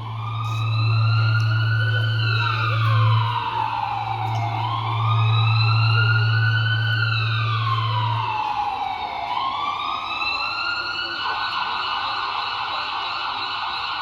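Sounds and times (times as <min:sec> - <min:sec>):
steady low hum: 0:00.0 - 0:08.6
emergency vehicle siren wailing: 0:00.0 - 0:14.0.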